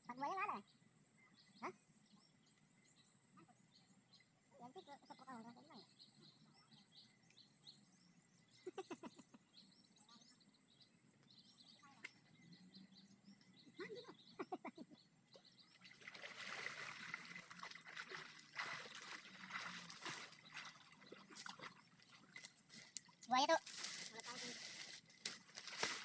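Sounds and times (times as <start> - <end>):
small bird chirps: 0.0 - 16.0
trickling or rustling hiss: 22.2 - 26.0.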